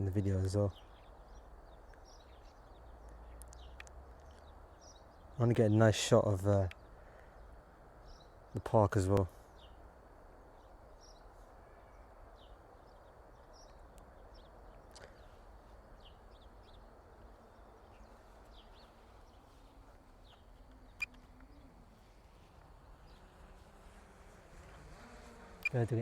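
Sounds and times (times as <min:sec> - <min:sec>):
low outdoor background hum: 0:00.0 - 0:26.0
faint bird chirps: 0:10.4 - 0:22.2.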